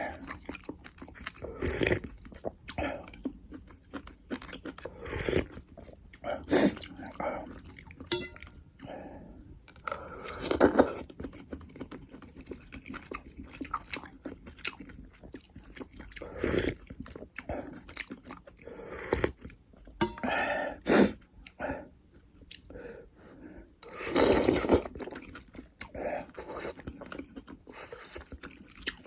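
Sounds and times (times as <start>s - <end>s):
person chewing food: 0.0s - 22.8s, 23.6s - 29.0s.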